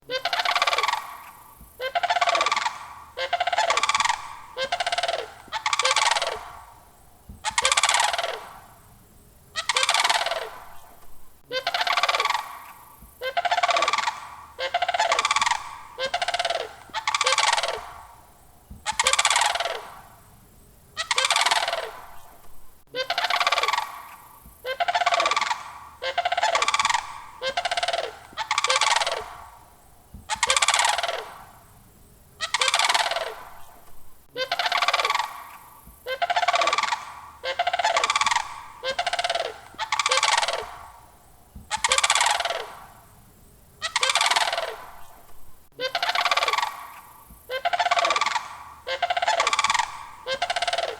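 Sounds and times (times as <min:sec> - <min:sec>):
crane calling: 0:00.0 - 0:50.9.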